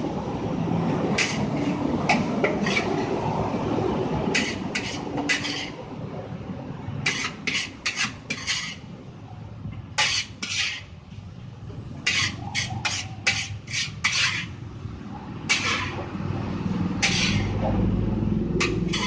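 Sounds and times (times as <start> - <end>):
metal spatula scraping a wok: 1.0 - 3.5, 4.2 - 5.9, 7.0 - 8.9, 10.0 - 11.0, 12.0 - 14.6, 15.5 - 16.1, 16.9 - 17.7, 18.5 - 19.0.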